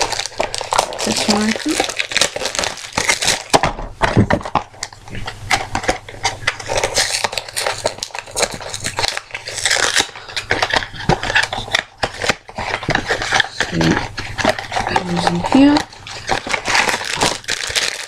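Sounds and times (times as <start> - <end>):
packaging crinkling and rustling: 0.0 - 18.0.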